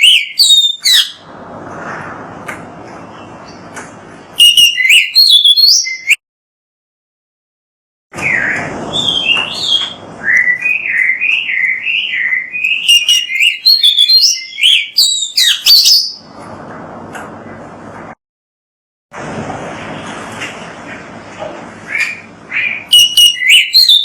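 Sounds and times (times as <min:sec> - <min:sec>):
magpie-robin singing: 0:00.0 - 0:01.2, 0:04.4 - 0:06.2, 0:08.2 - 0:16.3, 0:21.9 - 0:24.0.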